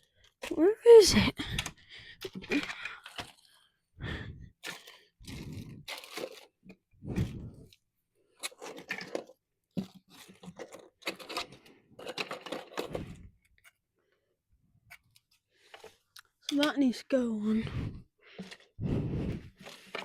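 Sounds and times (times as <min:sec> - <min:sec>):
tools clattering and scraping: 0:10.1 - 0:13.0.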